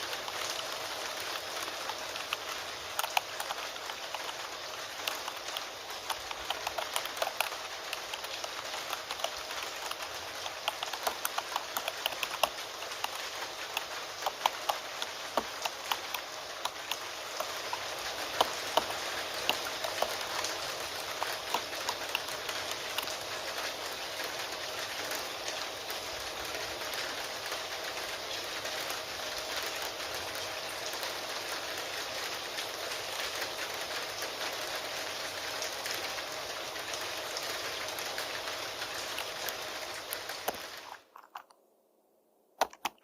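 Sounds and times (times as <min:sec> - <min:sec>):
rain hiss: 0:00.0 - 0:41.5
keyboard typing clicks: 0:01.9 - 0:04.4, 0:05.0 - 0:22.3, 0:42.6 - 0:43.0.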